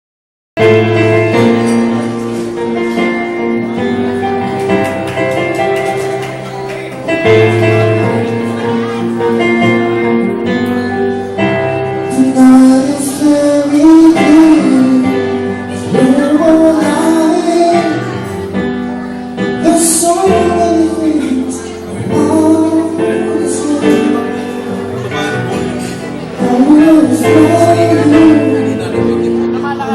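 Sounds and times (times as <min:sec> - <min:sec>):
person singing: 0:11.9 - 0:29.9
strummed acoustic chords: 0:21.6 - 0:29.9.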